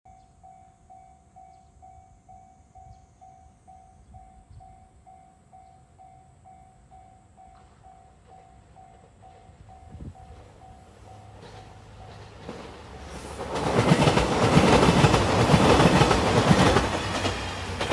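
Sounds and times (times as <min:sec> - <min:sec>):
level-crossing warning bell ringing: 0:00.1 - 0:12.8.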